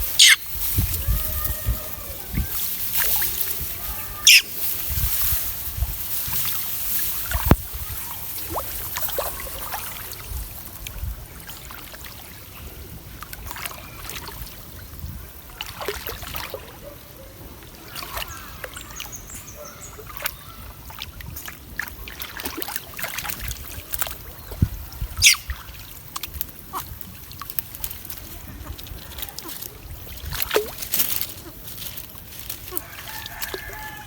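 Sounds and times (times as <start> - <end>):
water trickling and splashing: 0.0 - 34.0.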